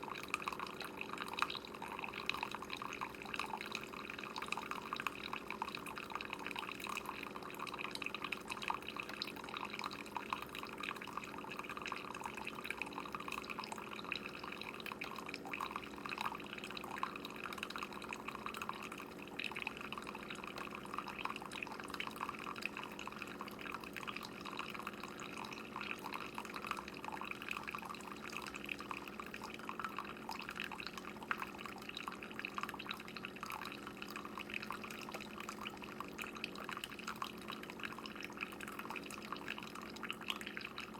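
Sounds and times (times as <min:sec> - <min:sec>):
coffee dripping into a cup: 0:00.0 - 0:40.9
coffee machine humming: 0:00.0 - 0:40.9.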